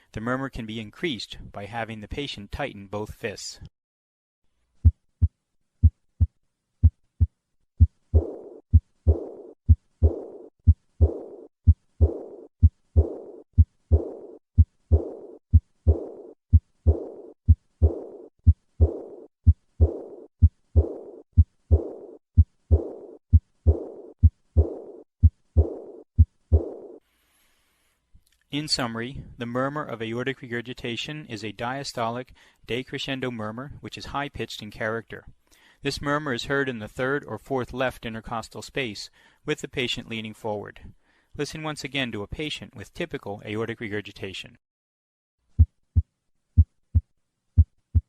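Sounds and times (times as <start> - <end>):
high-pitched heart murmur: 4.8 - 26.9
heartbeats: 4.8 - 27.0, 45.5 - 48.0.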